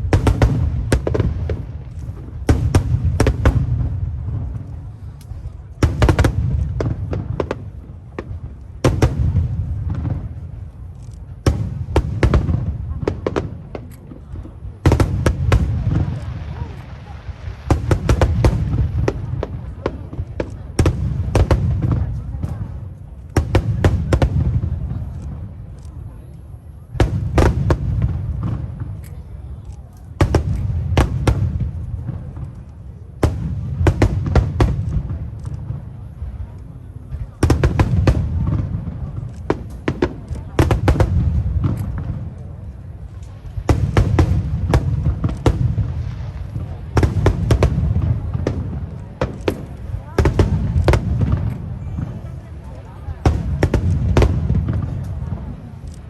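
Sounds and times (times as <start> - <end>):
fireworks shells booming: 0.0 - 56.0
sharp crackling of fireworks: 0.0 - 56.0.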